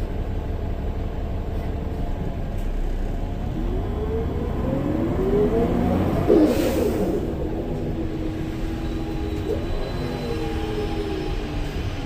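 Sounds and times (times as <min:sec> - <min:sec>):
bus engine rumbling: 0:00.0 - 0:12.0
rising engine whine: 0:02.9 - 0:12.0.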